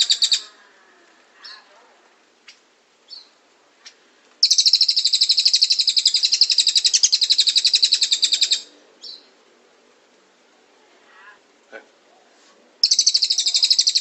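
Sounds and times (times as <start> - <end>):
bird fast trill: 4.4 - 9.2, 12.8 - 14.0.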